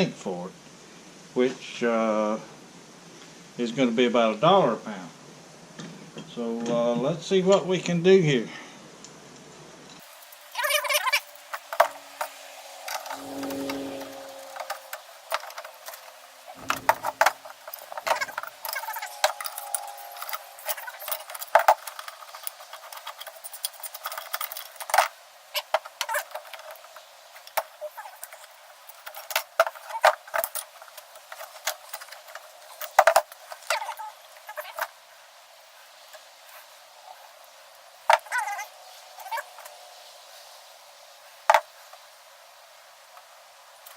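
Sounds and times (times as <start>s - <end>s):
metal tools clinking: 16.6s - 25.0s.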